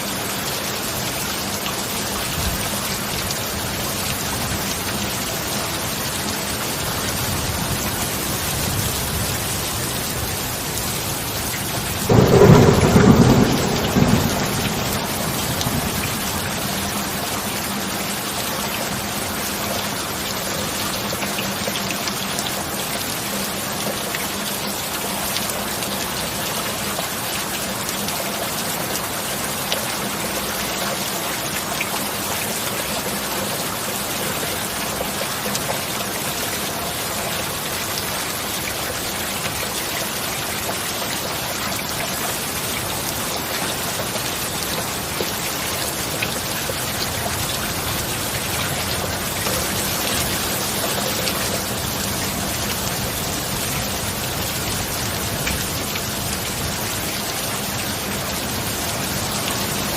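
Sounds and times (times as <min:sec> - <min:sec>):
steady rain: 0:00.0 - 0:59.9
thunder clap and rumble: 0:11.7 - 0:17.6.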